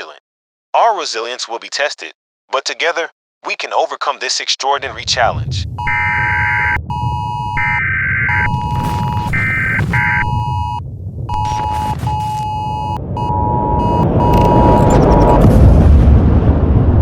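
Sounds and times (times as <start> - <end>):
low rumble: 4.8 - 17.0
electronic alarm beeps: 5.8 - 15.4.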